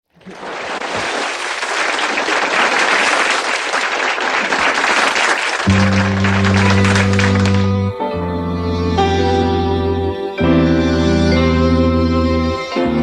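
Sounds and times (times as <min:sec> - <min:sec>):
crowd applauding: 0:00.1 - 0:08.0
instrumental backing track: 0:05.7 - 0:13.0.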